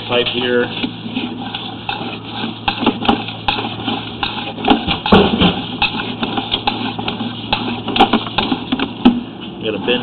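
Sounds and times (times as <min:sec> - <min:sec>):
steady low hum: 0:00.0 - 0:10.0
knocks and rattles in pipe: 0:02.6 - 0:09.3.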